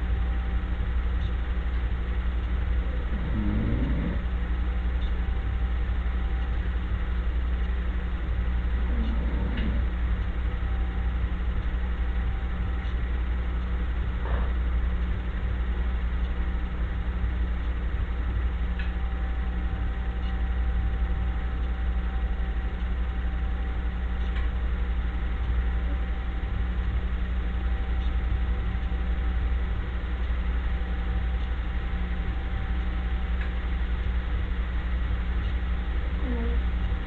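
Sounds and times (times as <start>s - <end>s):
steady low hum: 0.0s - 37.0s.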